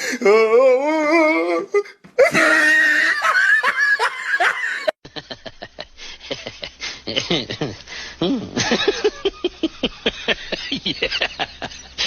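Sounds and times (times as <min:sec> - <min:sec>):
loud laughter: 0:02.3 - 0:07.7, 0:08.4 - 0:12.0.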